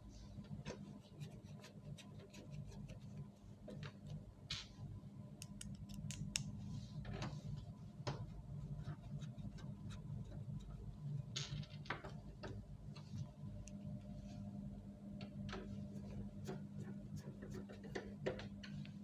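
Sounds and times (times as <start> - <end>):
steady low hum: 0.0 - 19.0
small clicks and taps of hand work: 5.4 - 6.6.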